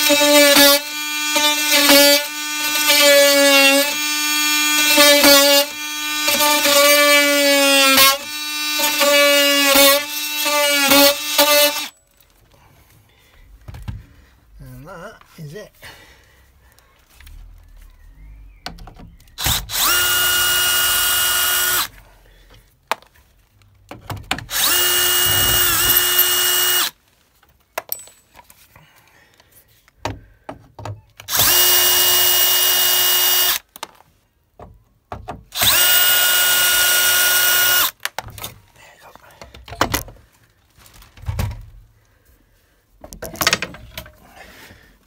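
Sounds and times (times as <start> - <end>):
oscillating multi-tool cutting: 0.0 - 11.9, 19.4 - 21.9, 24.5 - 27.0, 31.3 - 33.6, 35.6 - 38.0
handling clicks and knocks: 27.4 - 28.6.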